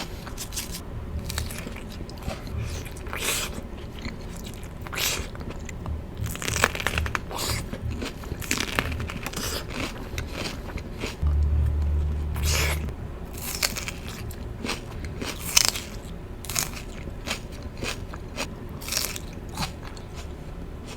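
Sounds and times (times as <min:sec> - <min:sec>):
low rumble: 0:11.2 - 0:15.1
crunchy bites and chewing: 0:14.6 - 0:20.3.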